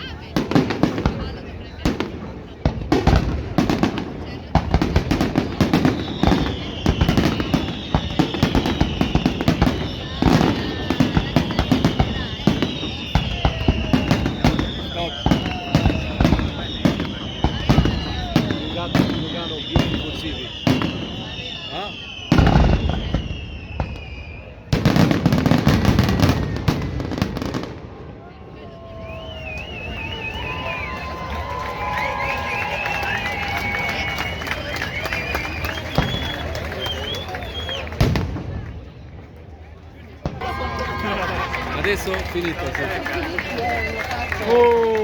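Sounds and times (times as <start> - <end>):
fireworks bangs and crackling: 0.0 - 45.0
firework bang: 22.3 - 27.8
high falling whistle: 28.8 - 38.0.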